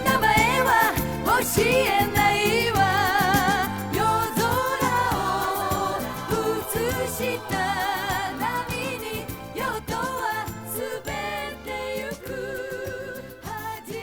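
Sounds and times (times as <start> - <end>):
instrumental pop music: 0.0 - 14.0.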